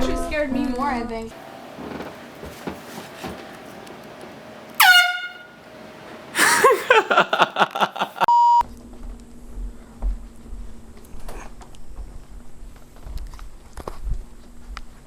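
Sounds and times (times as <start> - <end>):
air horn blast: 1.4 - 7.5
rough pulsing horn burst: 1.4 - 7.5.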